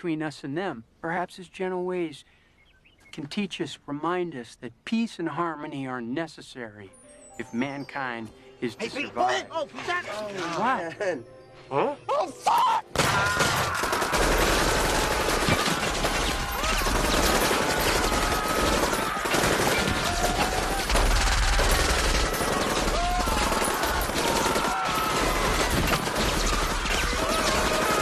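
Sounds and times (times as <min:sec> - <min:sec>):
rapid gunfire from many guns: 0:13.0 - 0:28.0.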